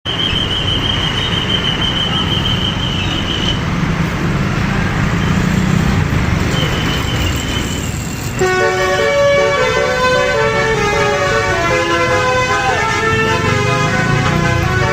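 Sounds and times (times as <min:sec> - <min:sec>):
bus engine rumbling: 0:00.0 - 0:14.9
musical horns playing a tune: 0:08.4 - 0:14.9.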